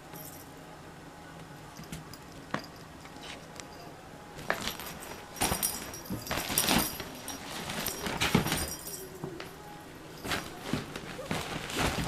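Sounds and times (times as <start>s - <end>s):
kitten rustling in cat tunnel: 4.5s - 9.0s, 10.2s - 12.0s.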